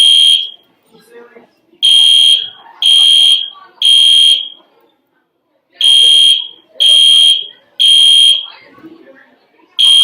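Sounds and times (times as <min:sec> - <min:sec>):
fire alarm beeps: 0:00.0 - 0:00.6, 0:01.8 - 0:04.6, 0:05.8 - 0:08.5, 0:09.8 - 0:10.0.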